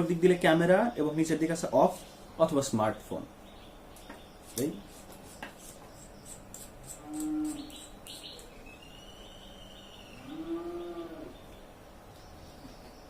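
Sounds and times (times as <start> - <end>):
cattle lowing: 10.2 - 11.5.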